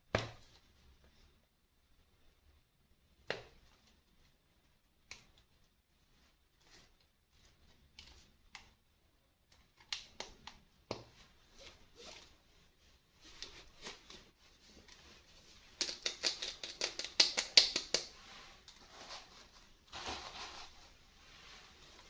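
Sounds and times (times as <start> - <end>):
toy packaging clicking and rustling: 15.8 - 18.1.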